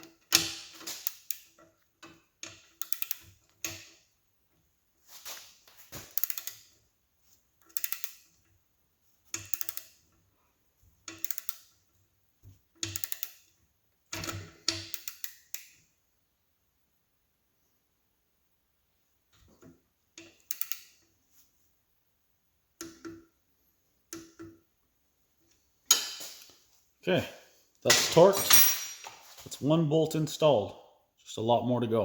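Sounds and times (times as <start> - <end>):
ratcheting torque wrench clicking: 2.5 - 3.9, 6.1 - 6.7, 7.6 - 8.3, 9.4 - 10.0, 11.1 - 11.7, 12.8 - 13.5, 14.7 - 15.7, 20.3 - 21.0.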